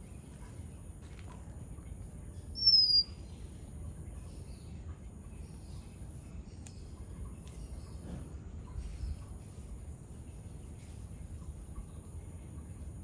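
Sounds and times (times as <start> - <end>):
soft bird notes: 2.4 - 3.2
bird whistle: 2.6 - 3.1.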